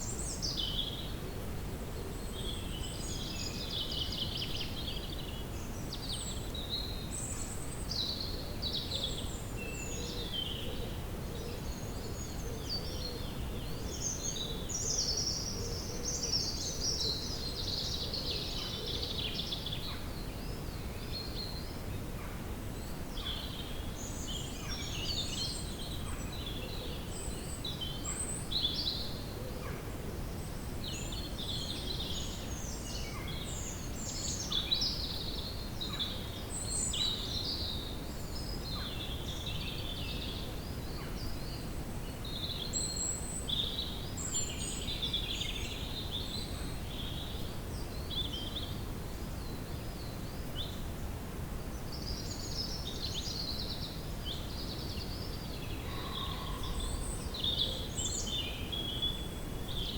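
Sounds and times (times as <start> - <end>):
birds chirping and warbling: 54.9 - 59.9.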